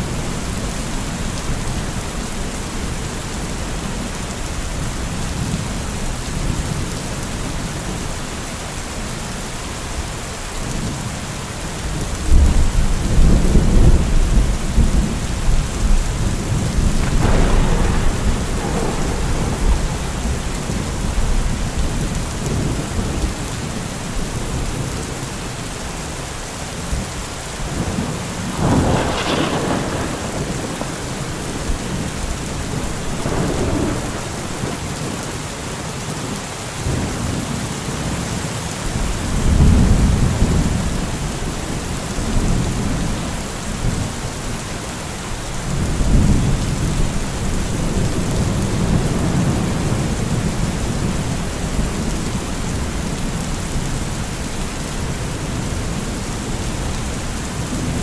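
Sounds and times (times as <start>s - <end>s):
heavy rain: 0.0s - 58.0s
sharp thunder claps: 12.3s - 23.4s, 27.8s - 35.3s
rolling thunder: 12.3s - 24.8s, 27.0s - 35.6s.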